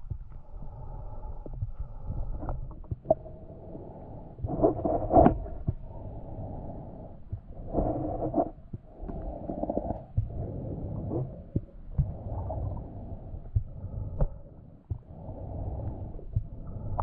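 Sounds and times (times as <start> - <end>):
muffled underwater rumble: 0.0 - 17.0.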